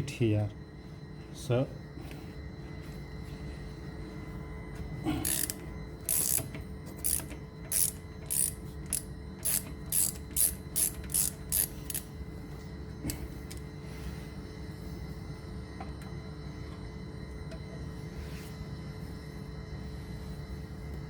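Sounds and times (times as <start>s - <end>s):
socket ratchet clicking: 5.2s - 12.1s.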